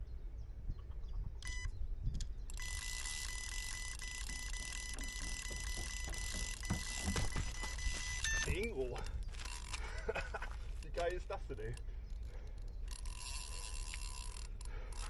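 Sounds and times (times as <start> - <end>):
electronic beeps: 1.4 - 1.8, 2.5 - 9.0.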